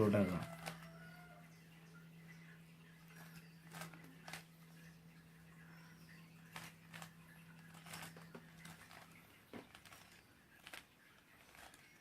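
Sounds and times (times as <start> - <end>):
faint low hum: 0.0 - 12.0
puzzle cube clicking and rattling: 0.2 - 1.0, 3.2 - 4.5, 6.4 - 12.0.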